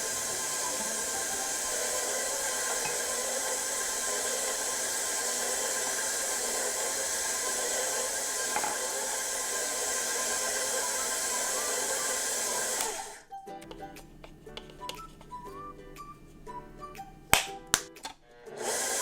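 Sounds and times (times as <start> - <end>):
electric mixer motor running: 0.0 - 13.2, 18.4 - 19.0.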